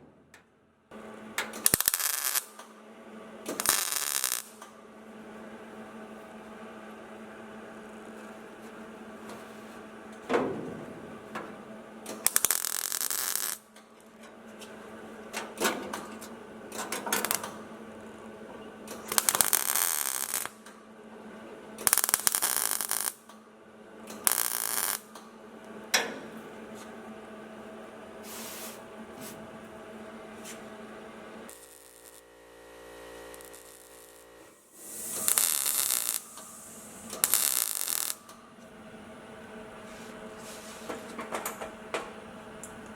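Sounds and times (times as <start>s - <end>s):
welder crackling bursts: 1.5s - 2.6s, 3.5s - 4.7s, 12.1s - 13.7s, 17.0s - 17.6s, 18.9s - 20.6s, 21.8s - 23.2s, 24.1s - 25.1s, 31.5s - 38.3s
steady low hum: 4.2s - 12.4s, 25.3s - 42.9s.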